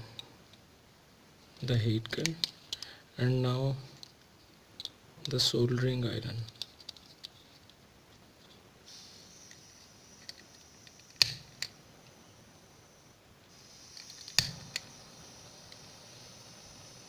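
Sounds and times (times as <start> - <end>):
gas soldering iron hissing: 8.8 - 17.0
igniter clicks: 10.2 - 11.8.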